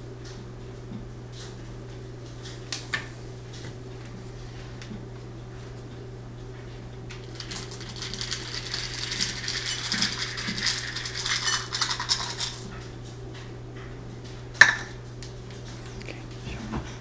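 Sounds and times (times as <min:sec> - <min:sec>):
utensils clattering against a dish: 0:07.3 - 0:12.8.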